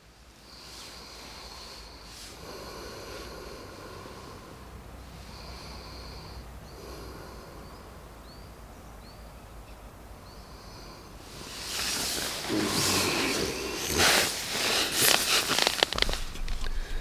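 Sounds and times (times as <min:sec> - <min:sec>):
birds chirping and whistling: 0:11.6 - 0:14.9.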